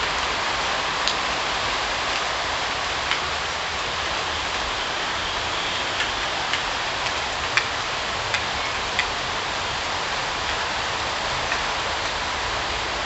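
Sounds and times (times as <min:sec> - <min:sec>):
steady rain: 0:00.0 - 0:13.0
sharp drip ticks: 0:03.0 - 0:03.4, 0:04.0 - 0:12.3.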